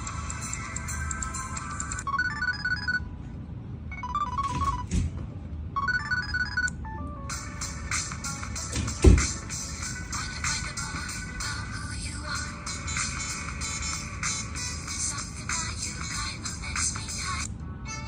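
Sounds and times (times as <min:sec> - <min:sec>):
phone ringtones: 0:01.7 - 0:03.1, 0:03.9 - 0:04.9, 0:05.8 - 0:07.4.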